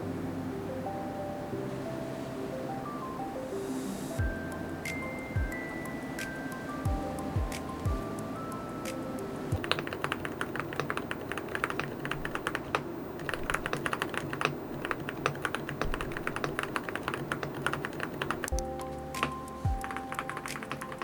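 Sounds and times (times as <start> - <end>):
keyboard key clicks: 9.6 - 21.0.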